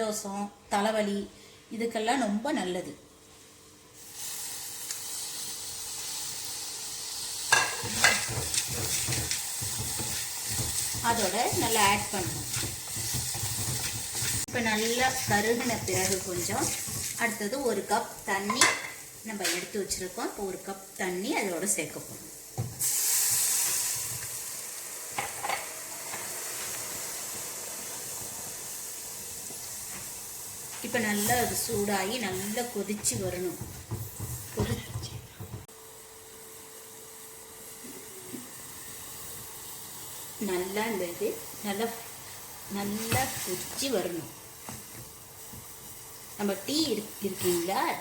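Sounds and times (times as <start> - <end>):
hot pan sizzling: 3.9 - 48.0
spatula knocking pan: 7.5 - 17.2, 32.9 - 35.7
spatula stirring in pan: 7.5 - 17.7.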